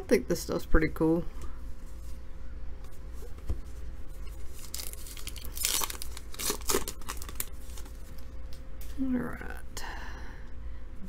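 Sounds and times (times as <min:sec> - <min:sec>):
plastic wrapper tearing and crumpling: 0:04.3 - 0:08.3.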